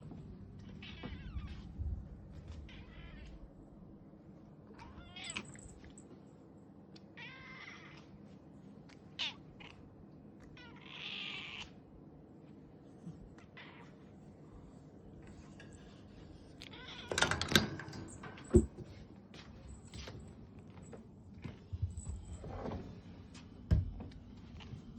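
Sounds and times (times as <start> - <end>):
cat meowing: 0.8 - 1.7, 4.8 - 5.5, 7.2 - 8.0, 10.6 - 11.7.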